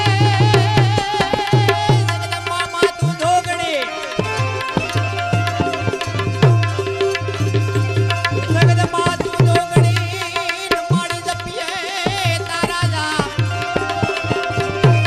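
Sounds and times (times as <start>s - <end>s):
tabla drum strokes: 4.2s - 15.0s.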